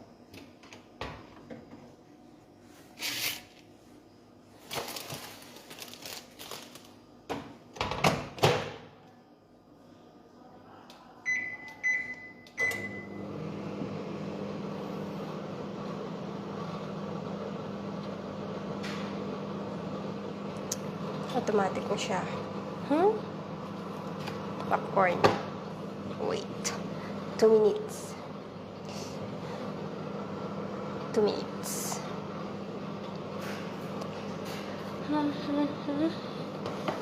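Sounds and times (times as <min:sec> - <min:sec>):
microwave oven humming: 0:03.5 - 0:37.0
keypad beeps: 0:11.3 - 0:13.1.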